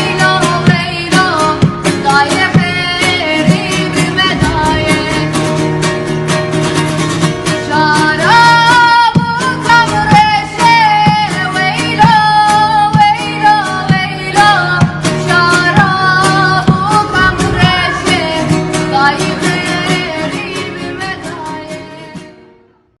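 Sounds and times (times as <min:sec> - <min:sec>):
plucked strings: 0:00.0 - 0:08.2
low drone: 0:04.1 - 0:06.8, 0:16.2 - 0:20.3.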